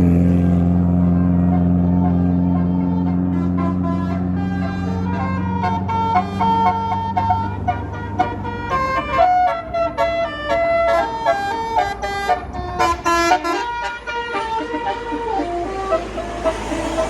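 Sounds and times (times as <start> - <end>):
bus multi-tone horn melody: 0.0 - 17.0.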